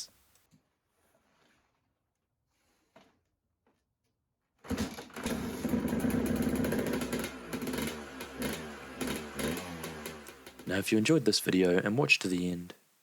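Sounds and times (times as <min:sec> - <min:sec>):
motocross engine revving: 0:04.7 - 0:11.8.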